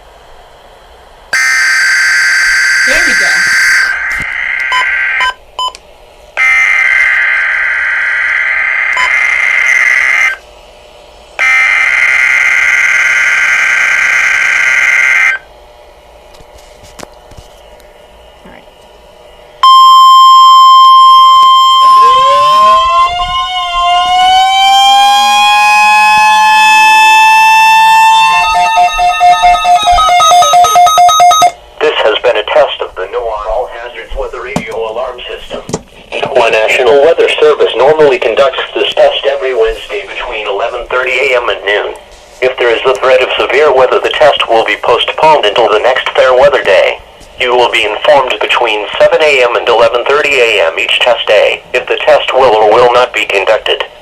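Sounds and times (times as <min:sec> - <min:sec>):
steady warning alarm tone: 0:01.3 - 0:05.8, 0:06.4 - 0:10.4, 0:11.4 - 0:15.5, 0:19.6 - 0:31.7
screechy digital data bursts: 0:01.4 - 0:05.4, 0:06.4 - 0:10.4, 0:11.4 - 0:15.4
wailing sweeping alarm: 0:01.4 - 0:05.4, 0:06.4 - 0:10.4, 0:11.4 - 0:15.5, 0:19.6 - 0:31.6
rapid pulsing beep: 0:01.4 - 0:05.8, 0:08.9 - 0:10.0, 0:19.6 - 0:22.7, 0:28.2 - 0:31.6.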